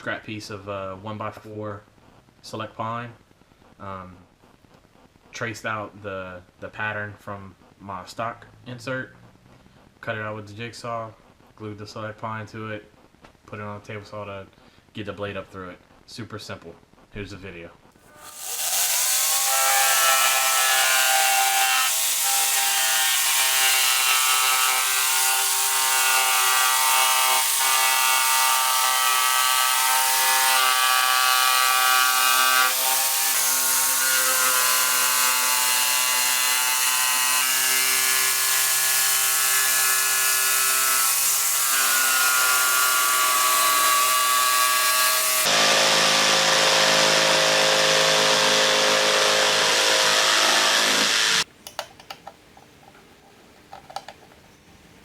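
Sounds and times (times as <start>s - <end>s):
power tool working wood: 18.1s - 51.5s.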